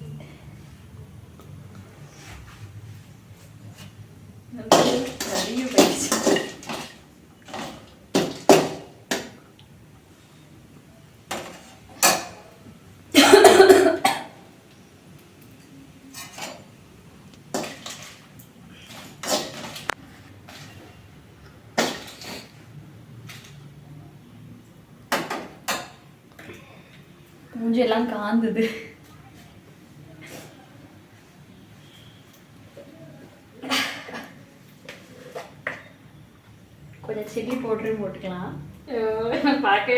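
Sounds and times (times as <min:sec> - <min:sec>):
metal spoon scraping in pan: 0:04.9 - 0:07.0
person coughing: 0:13.2 - 0:14.4.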